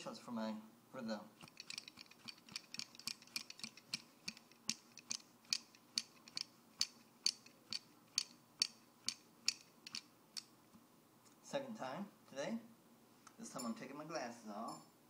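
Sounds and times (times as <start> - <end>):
regular sharp ticking: 1.4 - 11.4.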